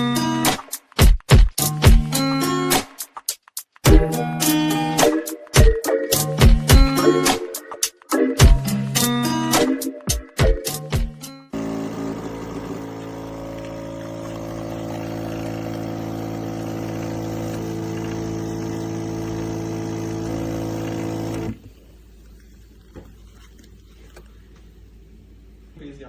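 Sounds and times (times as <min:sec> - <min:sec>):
espresso machine pump buzzing: 0:11.6 - 0:24.8.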